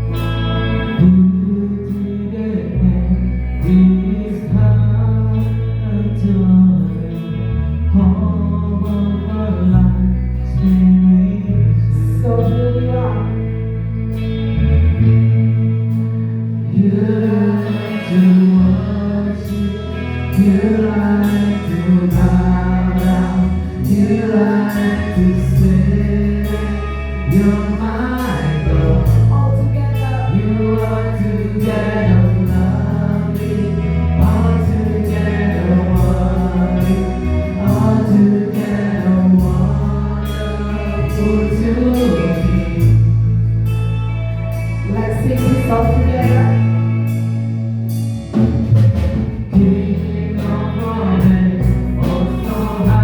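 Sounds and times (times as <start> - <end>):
singers singing: 0.0 - 43.4, 48.4 - 53.0
held bass notes: 0.0 - 53.0
worship band playing: 0.0 - 53.0
steady drum beat: 47.9 - 53.0.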